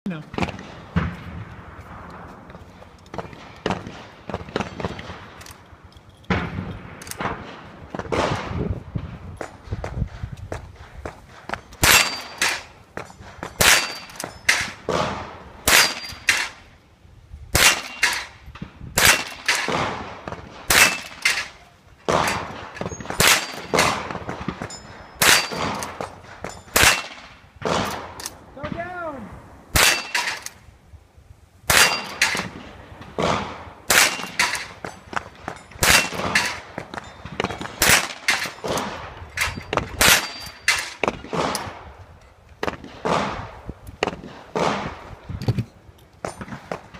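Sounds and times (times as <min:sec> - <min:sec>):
rifle shots: 0:06.3 - 0:09.8, 0:10.8 - 0:16.6, 0:17.5 - 0:18.4, 0:19.0 - 0:28.3, 0:29.7 - 0:30.5, 0:31.7 - 0:41.9, 0:42.6 - 0:45.2
metallic ring: 0:11.8 - 0:14.8, 0:39.4 - 0:41.0.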